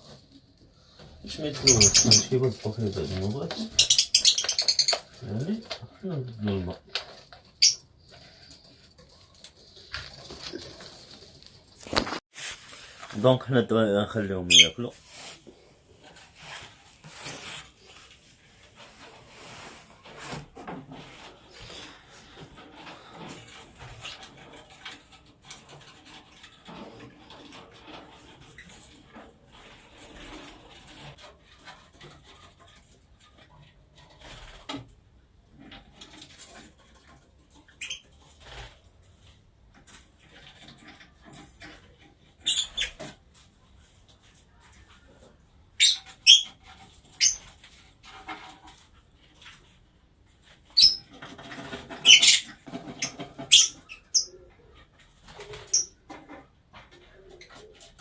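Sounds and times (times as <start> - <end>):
birds rustling and fluttering: 0.0 - 58.0
high-pitched bird chirps: 1.6 - 2.4.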